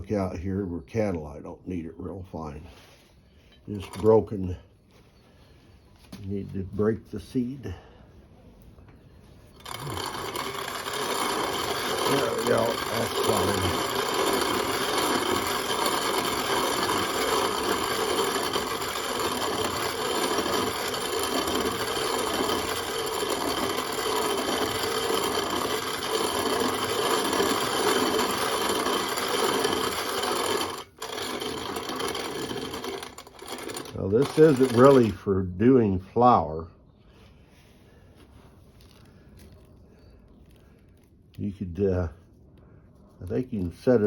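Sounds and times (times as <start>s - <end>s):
hand mill grinding grain: 3.6s - 4.6s, 9.4s - 35.6s, 43.2s - 44.0s.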